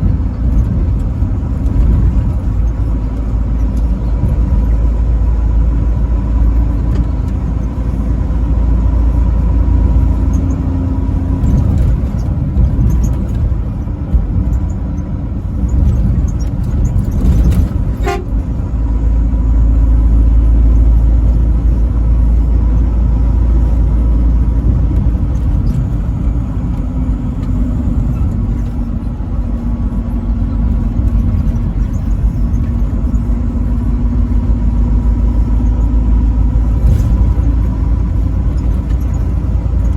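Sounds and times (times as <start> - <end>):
truck road and engine rumble: 0.0 - 39.9.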